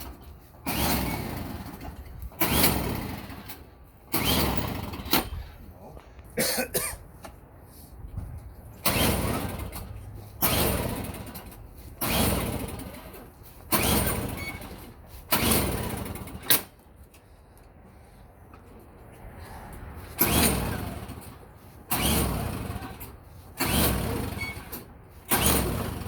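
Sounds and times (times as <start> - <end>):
snowblower engine pull-start: 0.0 - 5.5, 8.8 - 16.8, 20.0 - 26.0.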